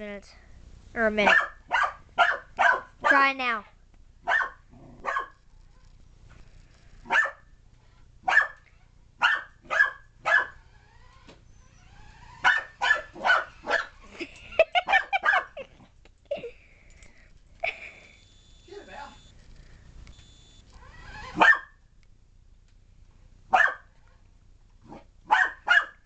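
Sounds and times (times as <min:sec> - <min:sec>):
puppy barking: 0:01.2 - 0:03.2, 0:04.2 - 0:05.4, 0:07.1 - 0:07.5, 0:08.2 - 0:08.6, 0:09.2 - 0:10.6, 0:12.4 - 0:14.0, 0:14.9 - 0:15.6, 0:21.4 - 0:21.8, 0:23.5 - 0:23.9, 0:25.3 - 0:26.0.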